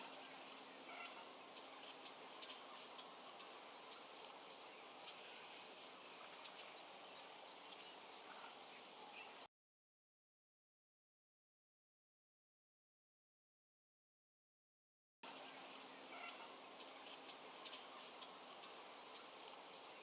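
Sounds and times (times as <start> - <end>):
kingfisher high whistled calls: 0.8 - 2.9, 4.2 - 5.3, 16.0 - 17.8, 19.4 - 19.8.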